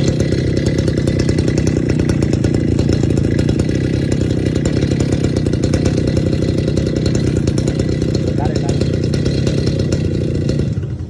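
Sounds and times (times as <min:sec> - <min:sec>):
cut-off saw engine running: 0:00.0 - 0:11.0.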